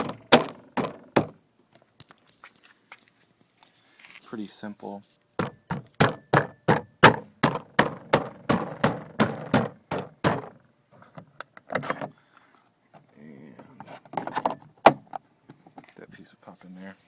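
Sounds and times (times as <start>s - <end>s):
door panel being knocked: 0.0s - 1.4s, 5.4s - 10.6s.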